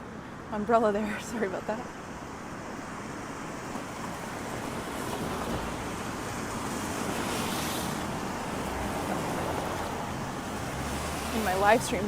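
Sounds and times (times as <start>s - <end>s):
rain: 0.0s - 12.0s
tyres on wet pavement: 2.7s - 12.0s.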